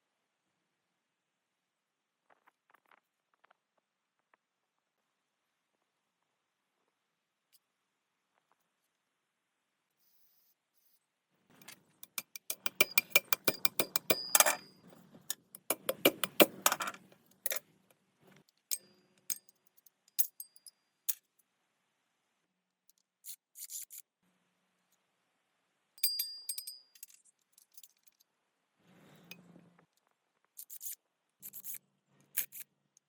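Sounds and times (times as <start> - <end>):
small metal parts clinking: 11.6 - 17.6, 26.0 - 28.2.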